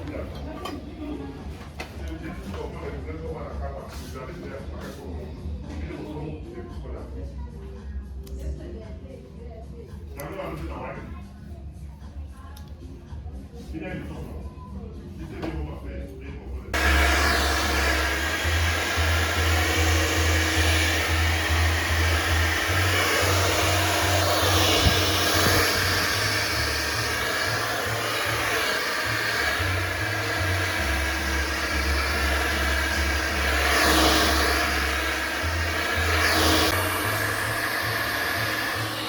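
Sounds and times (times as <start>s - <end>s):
steady rushing hiss: 16.8s - 39.0s.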